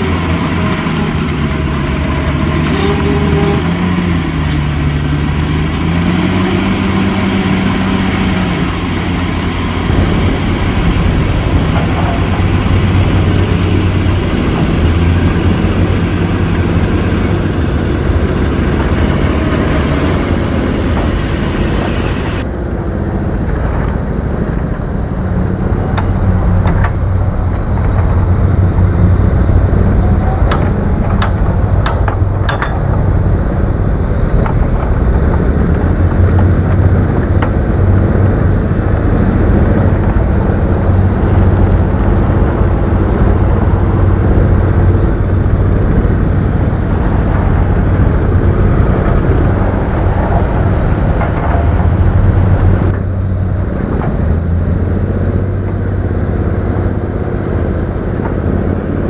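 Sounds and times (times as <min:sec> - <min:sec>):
heavy diesel engine under load: 0:00.0 - 0:59.0
sharp metallic clanks: 0:30.4 - 0:33.4.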